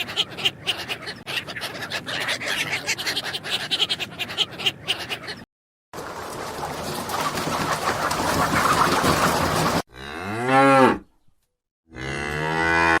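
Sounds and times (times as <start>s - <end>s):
cow mooing: 9.9s - 11.1s, 11.9s - 13.0s.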